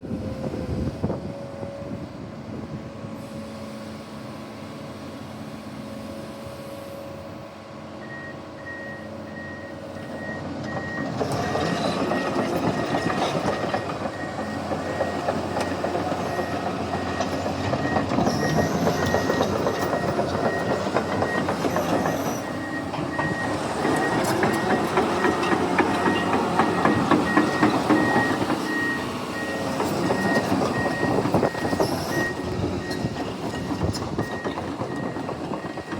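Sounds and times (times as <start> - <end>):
excavator diesel engine running: 0.0 - 35.9
steel tracks clattering: 10.4 - 35.9.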